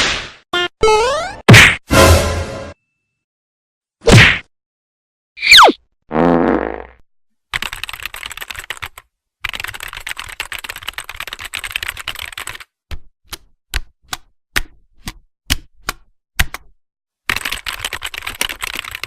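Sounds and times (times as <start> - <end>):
keyboard typing: 7.6 - 12.7, 17.3 - 19.0.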